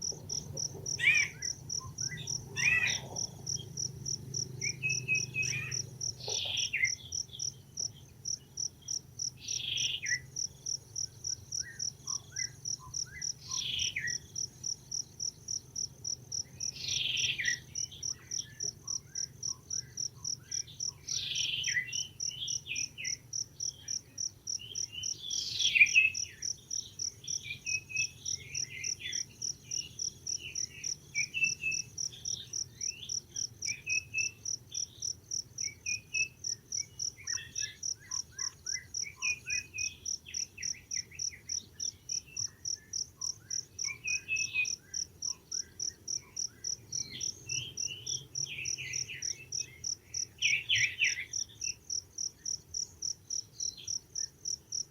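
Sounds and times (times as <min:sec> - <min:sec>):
insect chirping pulse: 0:00.0 - 0:54.9
short chirping calls: 0:00.2 - 0:08.0, 0:24.6 - 0:51.8.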